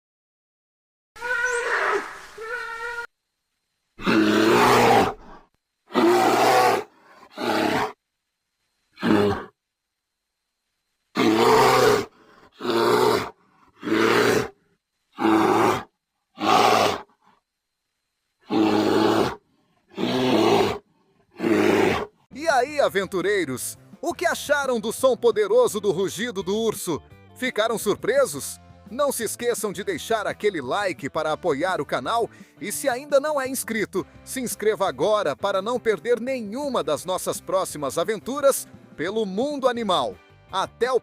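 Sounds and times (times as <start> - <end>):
bear roaring and growling: 4.0 - 8.0, 9.0 - 9.6, 11.1 - 14.6, 15.2 - 17.1, 18.4 - 22.2.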